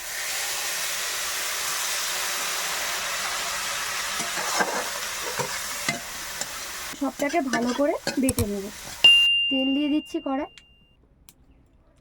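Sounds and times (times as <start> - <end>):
hot oil sizzling: 0.0 - 9.3.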